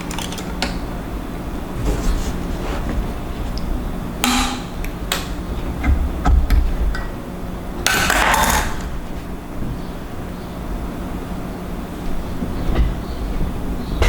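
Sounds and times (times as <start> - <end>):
metal and plastic parts clicking: 0.0 - 0.8
scraping rustle: 1.6 - 3.6.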